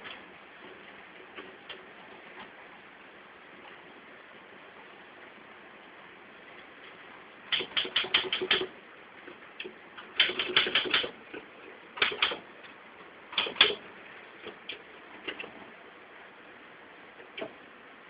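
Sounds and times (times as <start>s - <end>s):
typewriter keys striking: 7.5s - 8.7s, 10.2s - 11.2s, 12.0s - 12.4s.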